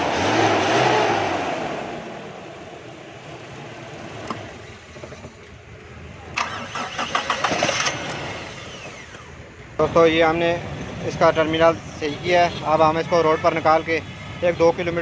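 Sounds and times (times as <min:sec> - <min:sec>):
car engine idling: 0:01.9 - 0:12.0.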